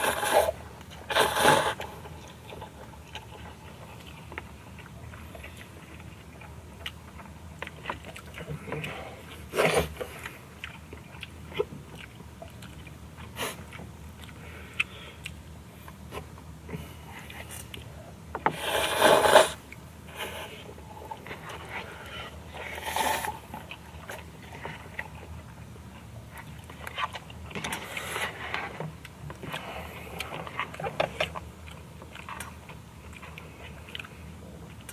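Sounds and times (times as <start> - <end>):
loud noodle slurping: 0.0 - 1.9, 18.5 - 19.6
quiet chewing: 0.0 - 34.9.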